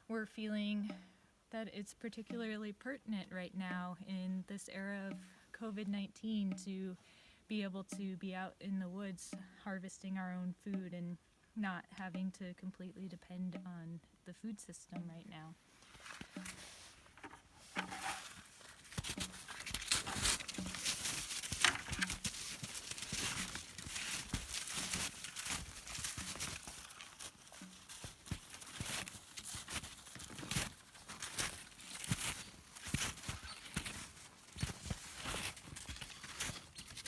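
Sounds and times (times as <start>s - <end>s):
footsteps crunching on woodland ground: 15.8s - 37.0s.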